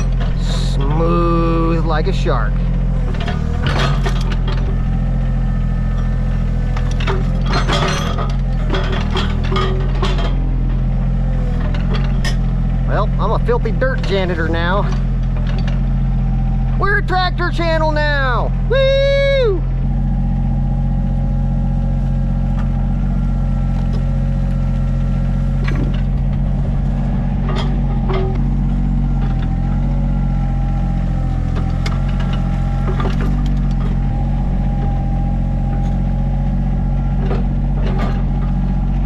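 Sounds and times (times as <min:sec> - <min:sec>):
diesel engine running: 0:00.0 - 0:39.0
steady whine: 0:12.1 - 0:39.0.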